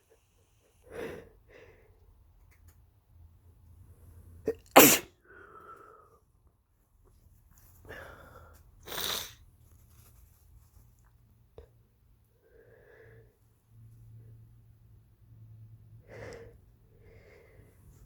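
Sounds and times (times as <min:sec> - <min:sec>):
man sneezing: 0:04.8 - 0:05.1.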